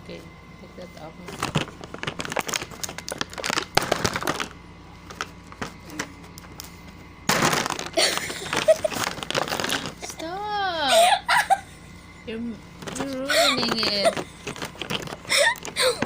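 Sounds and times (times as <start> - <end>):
plastic packaging crinkling: 1.2 - 10.4, 12.8 - 16.0.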